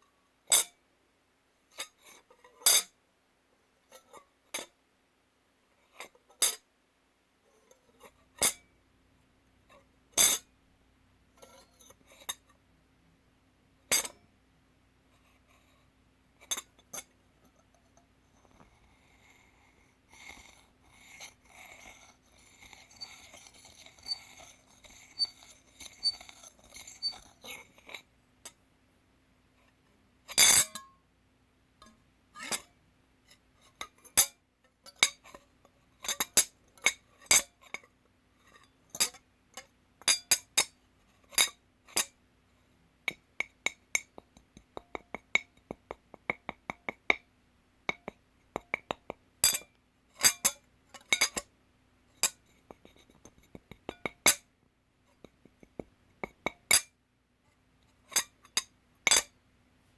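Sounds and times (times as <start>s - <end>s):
metal fork scraping a dish: 18.4s - 28.1s, 32.4s - 32.7s, 49.4s - 51.5s, 56.6s - 56.9s, 58.1s - 59.3s
fork clinking on a dish: 22.6s - 24.3s.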